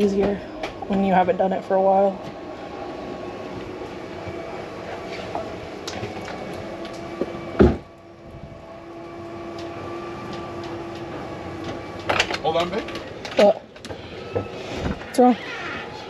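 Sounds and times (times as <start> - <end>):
mechanical hum: 0.0 - 16.0
steady humming tone: 0.0 - 16.0
loud thump: 7.6 - 7.8.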